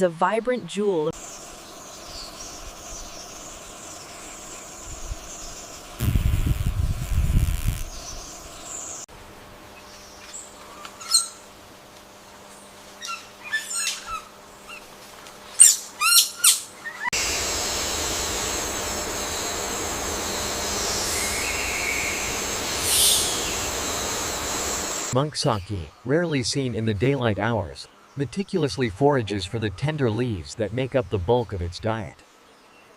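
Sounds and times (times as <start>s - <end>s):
forest background hiss: 0.3s - 32.9s
bird calls: 15.6s - 25.7s.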